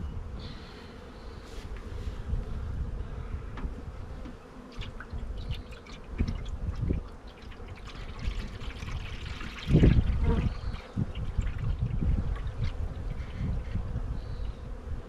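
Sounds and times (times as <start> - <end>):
bees buzzing: 0.0 - 15.0
liquid pouring into feeder: 4.8 - 13.6.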